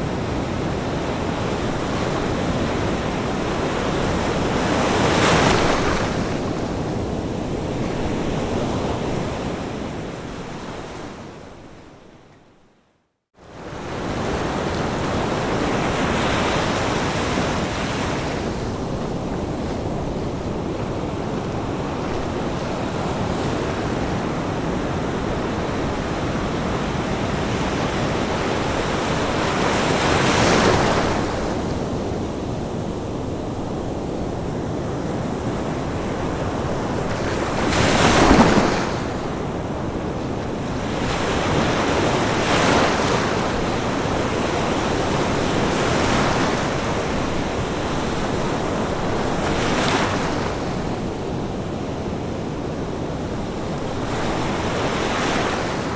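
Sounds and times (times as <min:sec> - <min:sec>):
ocean waves crashing: 0:00.0 - 0:11.0, 0:13.8 - 0:31.8, 0:34.5 - 0:52.2, 0:52.9 - 0:55.9
steady wash of surf: 0:00.0 - 0:11.5, 0:13.4 - 0:55.9.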